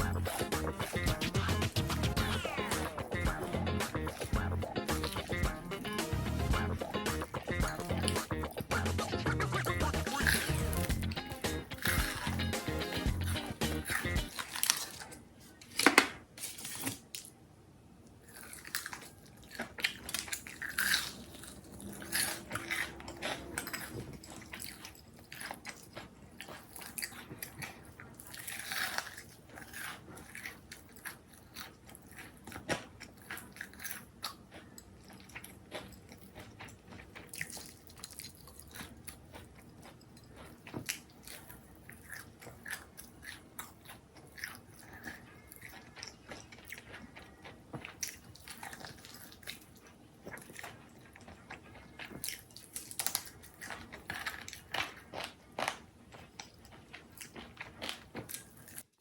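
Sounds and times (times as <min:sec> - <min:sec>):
chewing and crunching crisp food: 0:00.0 - 0:59.0.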